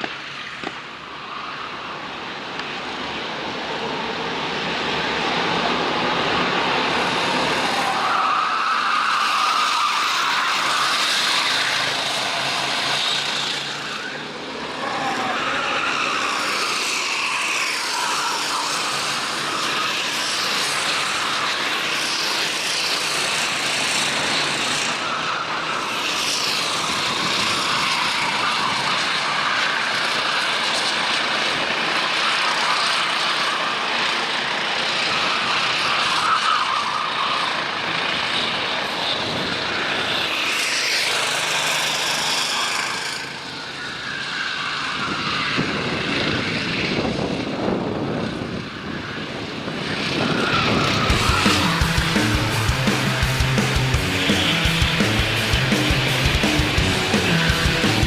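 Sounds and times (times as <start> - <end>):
racing kart engines: 0.0 - 58.0.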